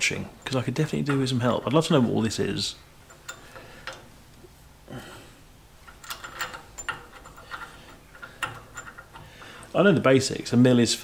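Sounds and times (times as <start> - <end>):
metal parts clicking and tapping: 0.4 - 4.1, 5.8 - 9.8.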